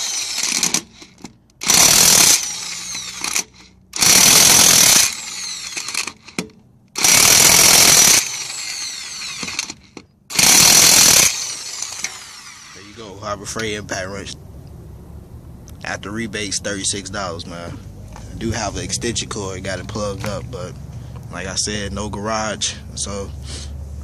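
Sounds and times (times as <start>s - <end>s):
electric impact wrench bursts: 0.0s - 6.4s, 7.0s - 13.4s.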